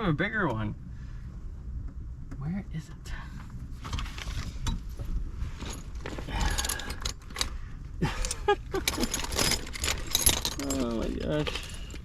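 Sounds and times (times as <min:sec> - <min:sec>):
metal tools clinking in toolbox: 0:05.6 - 0:07.5, 0:08.1 - 0:12.0.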